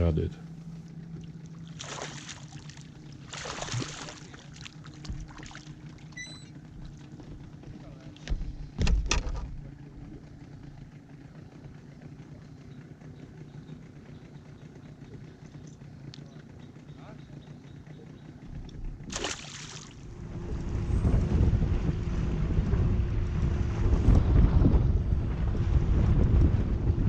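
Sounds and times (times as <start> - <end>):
faint low hum: 0.0 - 27.0
water splashing: 1.1 - 7.2, 19.0 - 20.0.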